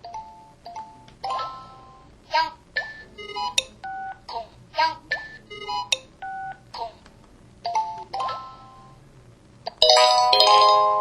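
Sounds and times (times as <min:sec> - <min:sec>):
chord of held electronic tones: 0:02.8 - 0:04.3
chime-like tones: 0:09.8 - 0:11.0.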